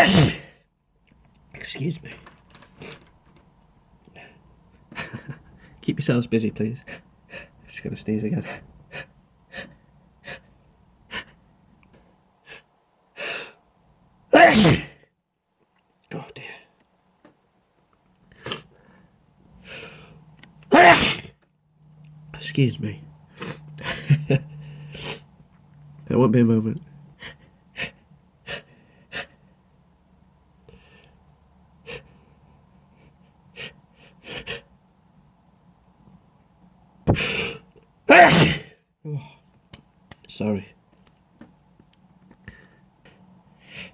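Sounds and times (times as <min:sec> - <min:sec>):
man gasping before a sneeze: 0:00.0 - 0:00.6
man sneezing: 0:00.0 - 0:00.6, 0:14.3 - 0:15.0, 0:20.7 - 0:21.3, 0:37.1 - 0:39.4.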